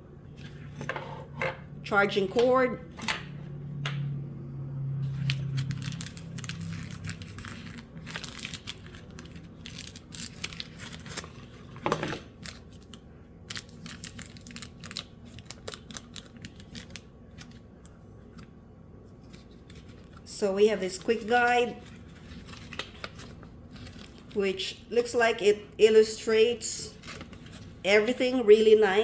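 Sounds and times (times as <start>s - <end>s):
packaging crinkling and rustling: 5.1s - 20.3s, 20.9s - 24.4s, 26.9s - 27.8s.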